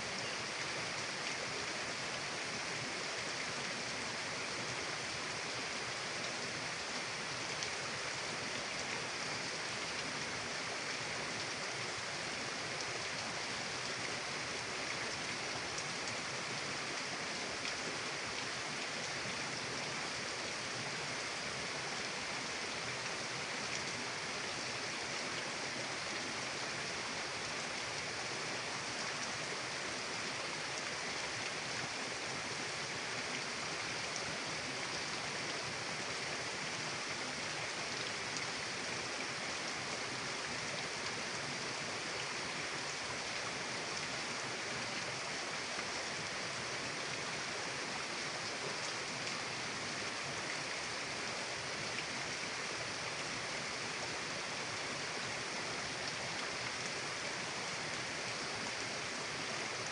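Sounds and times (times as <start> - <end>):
mountain river flowing: 0.0 - 59.9.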